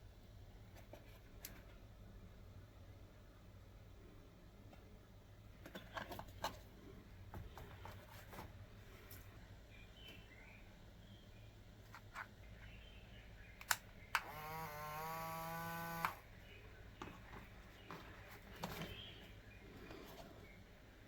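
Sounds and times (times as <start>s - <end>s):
switch clicking: 13.6s - 15.1s, 15.9s - 16.2s
small electric motor whining: 14.2s - 16.2s.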